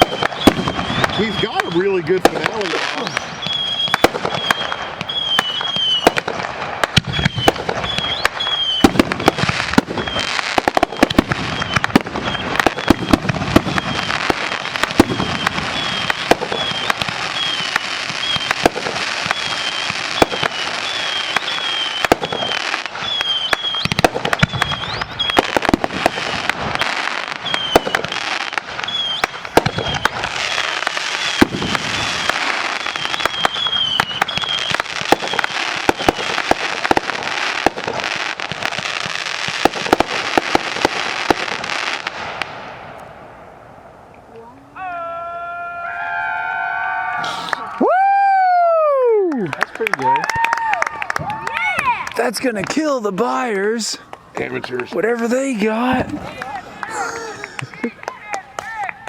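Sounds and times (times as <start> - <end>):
firework shells bursting: 0.0 - 43.1
firework crackling: 0.0 - 44.1, 46.0 - 59.0.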